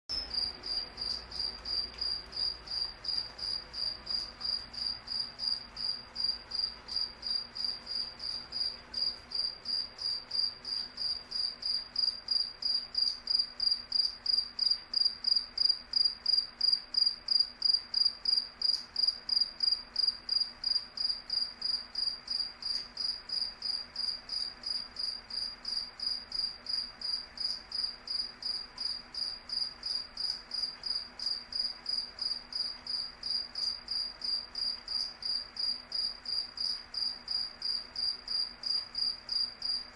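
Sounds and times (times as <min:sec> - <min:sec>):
cricket chirping: 0:00.1 - 0:39.9.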